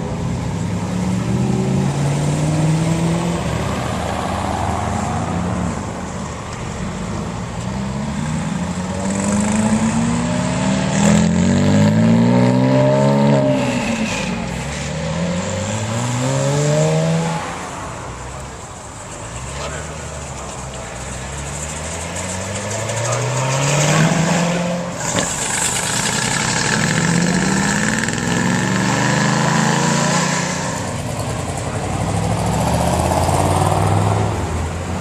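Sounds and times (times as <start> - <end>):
sports car engine revving: 7.7 - 17.6.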